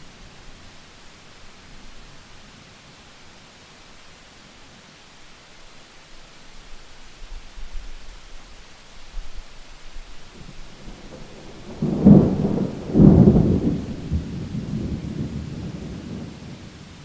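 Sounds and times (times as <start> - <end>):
steady rain: 0.0 - 17.0
thunder: 10.4 - 17.0.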